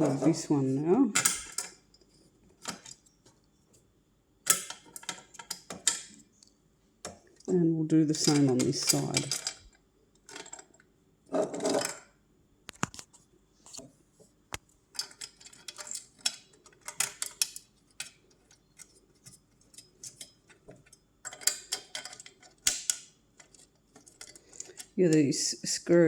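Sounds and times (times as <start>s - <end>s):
small screws clicking and clinking: 8.2s - 10.8s, 14.9s - 25.0s.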